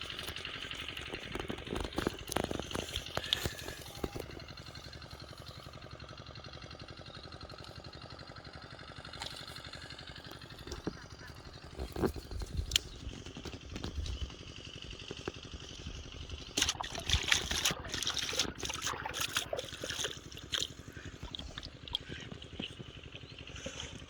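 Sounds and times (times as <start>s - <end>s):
water splashing and trickling: 16.1s - 24.0s.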